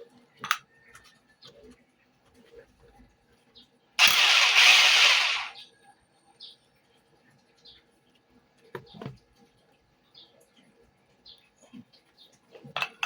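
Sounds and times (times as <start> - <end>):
demolition hammer: 4.0 - 5.6.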